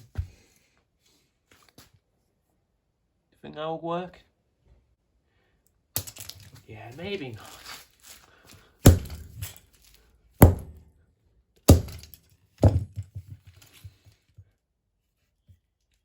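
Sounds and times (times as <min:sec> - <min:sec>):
loose pieces rattling: 0:06.0 - 0:06.7
heavy blows smashing fan: 0:08.9 - 0:09.6.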